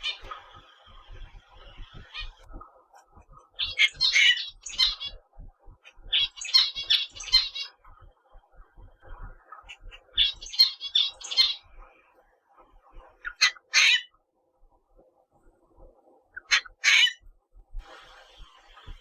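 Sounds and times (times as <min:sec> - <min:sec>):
cockatiel chirping: 0:00.0 - 0:00.3, 0:01.7 - 0:02.5, 0:03.6 - 0:05.2, 0:05.9 - 0:07.7, 0:09.7 - 0:11.6, 0:13.2 - 0:14.1, 0:16.4 - 0:17.2.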